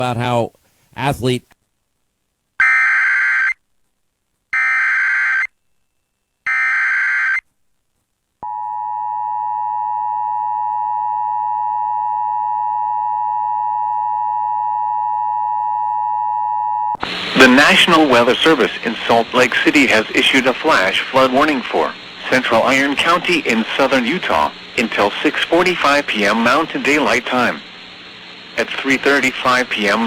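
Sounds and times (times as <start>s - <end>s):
buzzy data bursts: 17.0s - 30.0s.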